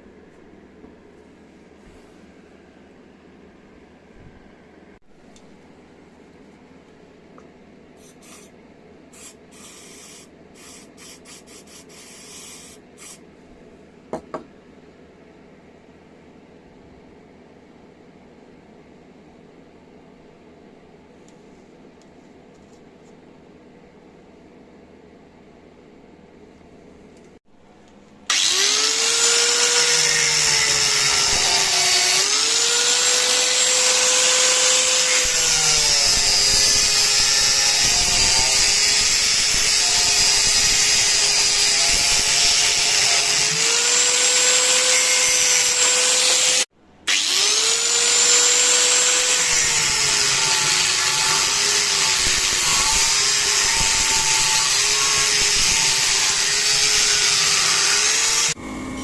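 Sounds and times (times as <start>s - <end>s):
power tool whining: 28.3s - 59.0s.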